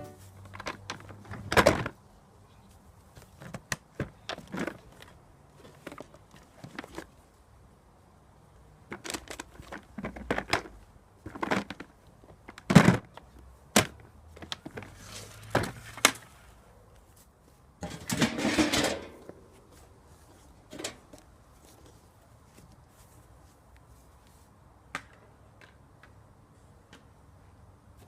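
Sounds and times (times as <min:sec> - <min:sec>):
objects being handled and set down: 0:17.8 - 0:22.0.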